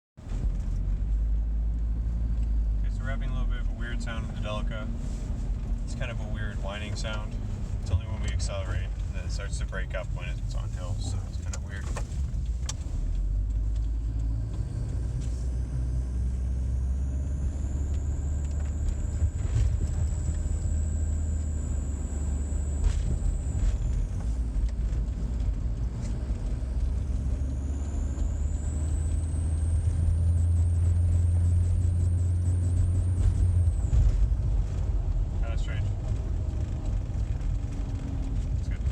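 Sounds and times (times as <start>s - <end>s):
engine and road rumble: 0.2s - 38.9s
high-pitched whine: 14.3s - 24.9s, 26.0s - 34.8s.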